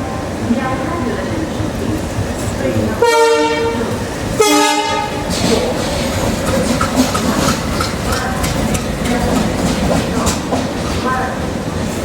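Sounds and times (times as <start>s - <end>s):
train running noise: 0.0s - 12.0s
train horn blast: 3.0s - 5.3s.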